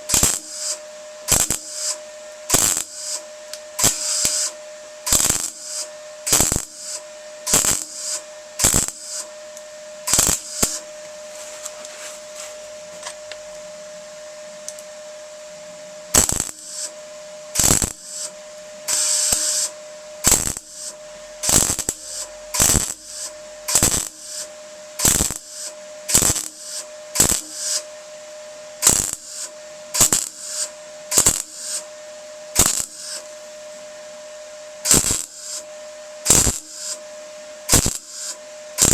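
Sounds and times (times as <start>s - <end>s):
welder crackling bursts: 0.0s - 9.3s, 10.1s - 10.9s, 16.1s - 27.9s, 28.8s - 31.8s, 32.6s - 33.3s, 34.8s - 35.7s, 36.3s - 37.0s, 37.7s - 38.9s
welding set hum: 0.0s - 38.9s.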